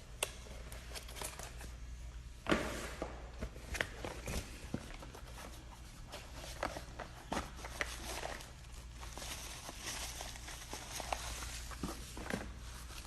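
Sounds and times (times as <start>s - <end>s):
packing material rustling: 3.6s - 13.0s.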